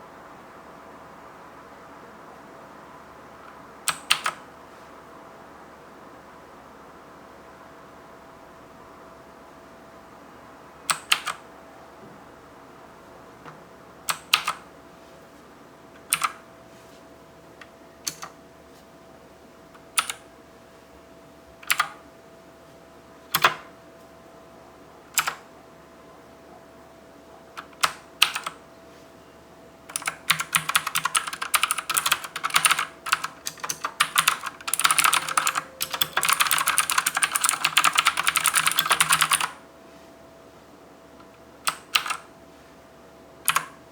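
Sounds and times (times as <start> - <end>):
clicky mechanical keyboard typing: 3.9 - 4.4, 10.9 - 11.4, 14.1 - 14.7, 16.0 - 16.4, 18.0 - 18.4, 19.8 - 20.2, 21.6 - 22.0, 23.3 - 23.7, 25.2 - 25.4, 27.6 - 28.6, 29.9 - 39.6, 41.7 - 42.3, 43.4 - 43.8.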